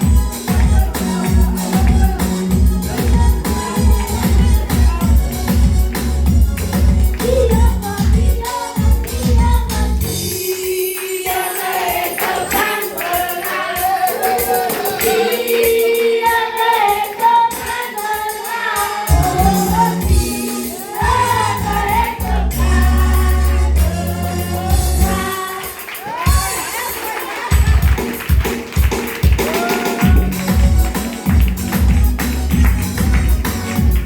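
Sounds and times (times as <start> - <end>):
deep bass accompaniment: 0.0 - 10.3, 19.1 - 25.3, 30.0 - 34.0
choir singing gospel: 0.0 - 27.5.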